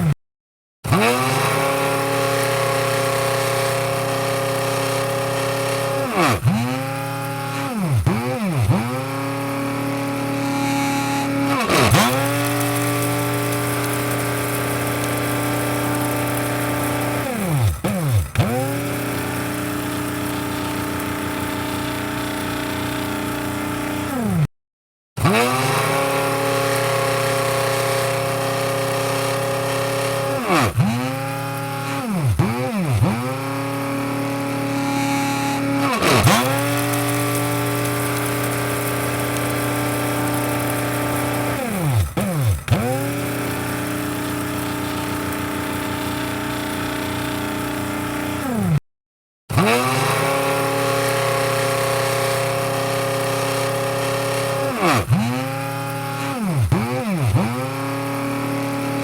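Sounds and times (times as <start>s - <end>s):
coffee grinder motor whining: 0.9s - 24.5s, 25.2s - 48.8s, 49.5s - 59.0s.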